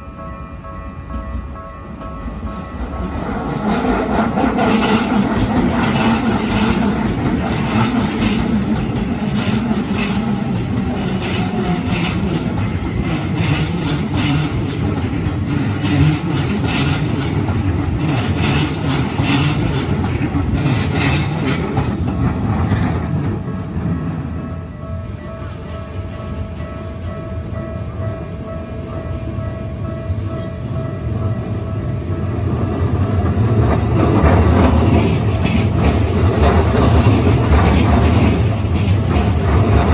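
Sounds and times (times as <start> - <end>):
train wheels rumbling on rail: 0.6 - 39.9
wheels clacking over rail joints: 2.0 - 24.7, 32.8 - 39.9.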